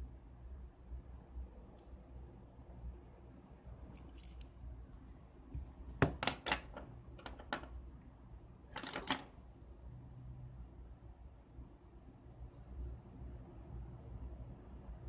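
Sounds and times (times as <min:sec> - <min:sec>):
small tools clicking and tapping: 0:06.0 - 0:07.7.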